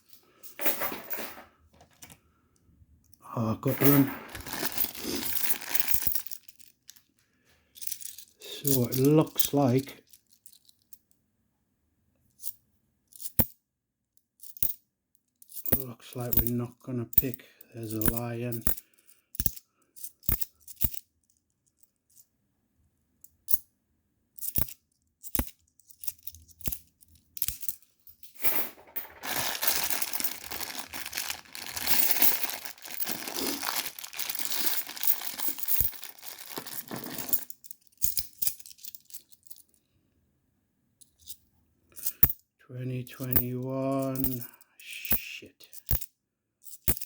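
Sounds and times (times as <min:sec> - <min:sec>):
coins clicking: 0:03.7 - 0:06.4, 0:27.4 - 0:39.6
plastic bag crinkling and tearing: 0:03.7 - 0:06.5, 0:28.7 - 0:37.4.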